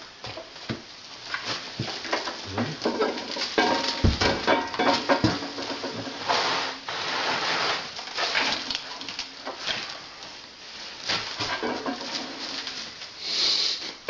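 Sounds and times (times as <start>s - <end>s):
heavy parts knocking and clattering: 1.8s - 6.1s
heavy thud: 4.0s - 4.5s.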